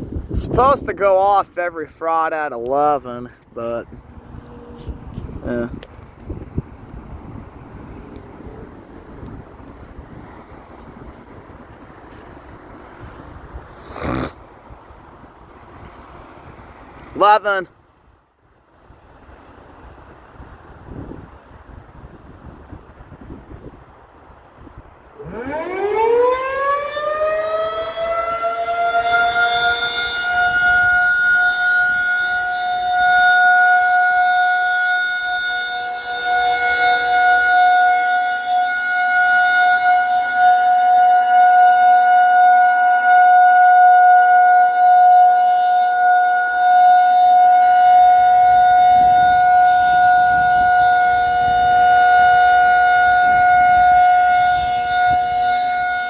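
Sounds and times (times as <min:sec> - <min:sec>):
warning siren winding up: 0:25.1 - 0:56.0.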